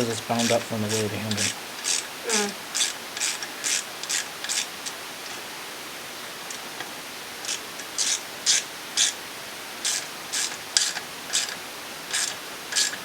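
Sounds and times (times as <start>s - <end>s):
ratchet wrench clicking: 0.0s - 5.4s, 7.4s - 9.2s, 9.8s - 13.0s.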